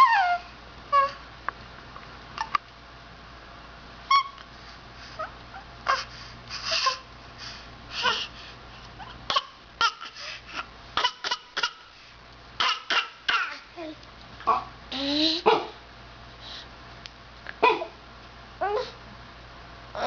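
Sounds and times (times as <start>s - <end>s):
child fake coughing: 11.0s - 11.9s, 12.6s - 13.6s
young child's vocal sounds: 14.9s - 15.5s.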